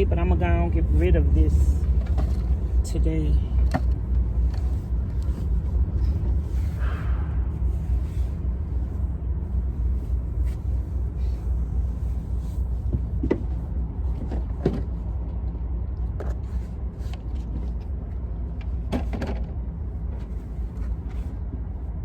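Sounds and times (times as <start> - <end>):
steady low rumble: 0.0 - 22.0
light knocks and bumps: 12.8 - 15.0.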